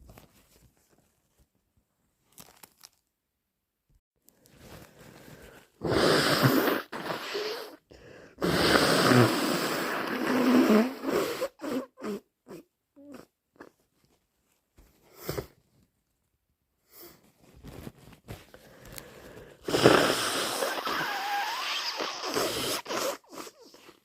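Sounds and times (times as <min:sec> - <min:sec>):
person sniffing: 0:05.0 - 0:13.3, 0:15.0 - 0:15.6, 0:18.5 - 0:24.0
person blowing nose: 0:05.2 - 0:13.7, 0:15.1 - 0:15.6, 0:19.0 - 0:24.0.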